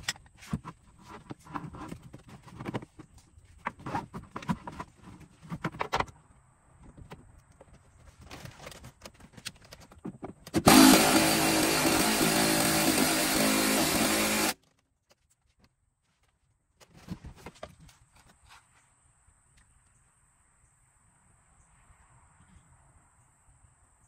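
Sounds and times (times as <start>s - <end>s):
loud motor humming with hiss: 10.7s - 14.6s.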